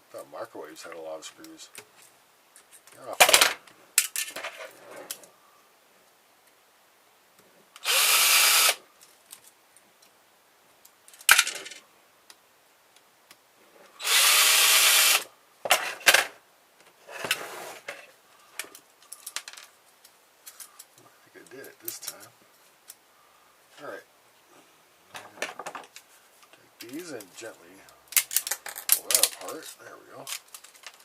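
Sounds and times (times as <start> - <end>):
metal parts clicking and tapping: 28.1 - 31.0.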